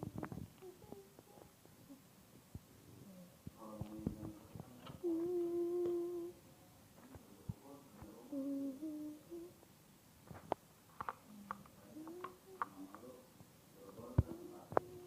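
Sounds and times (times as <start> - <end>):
person humming: 0.0 - 2.0, 5.0 - 6.4, 8.2 - 9.6, 11.9 - 13.0.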